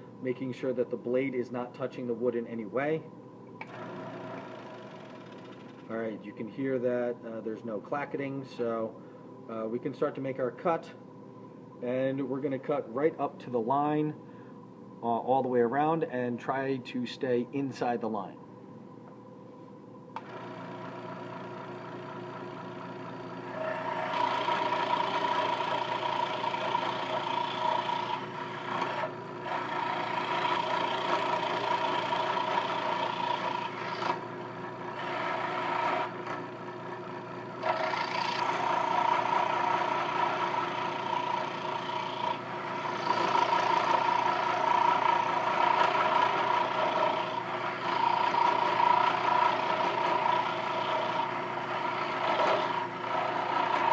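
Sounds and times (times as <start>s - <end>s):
scroll saw hum: 20.1s - 53.9s
saw cutting wood: 23.4s - 36.5s, 37.6s - 53.9s.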